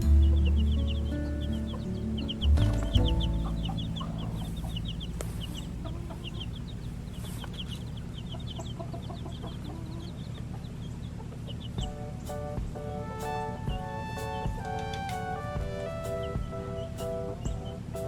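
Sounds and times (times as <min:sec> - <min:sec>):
chickens clucking: 0:00.0 - 0:12.2
steady low hum: 0:00.0 - 0:13.0.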